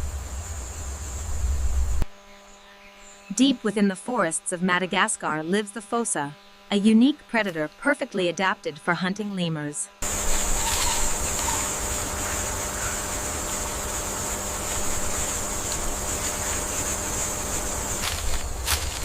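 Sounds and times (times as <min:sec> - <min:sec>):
high hiss: 0:00.0 - 0:02.0, 0:10.0 - 0:19.0.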